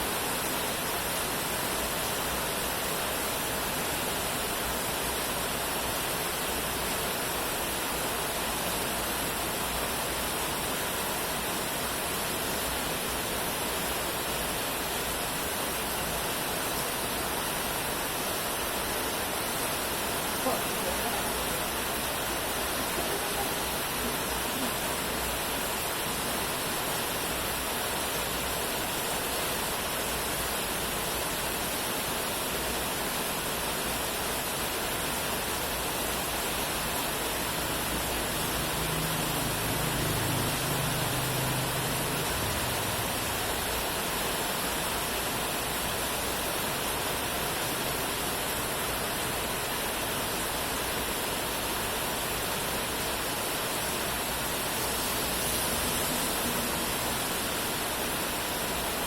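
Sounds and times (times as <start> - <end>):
steady rain: 0.0 - 59.0.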